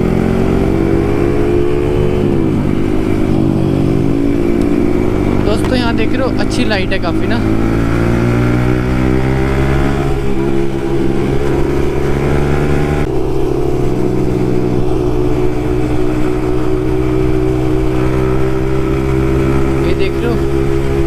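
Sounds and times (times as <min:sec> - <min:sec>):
motorcycle engine at steady revs: 0:00.0 - 0:21.0.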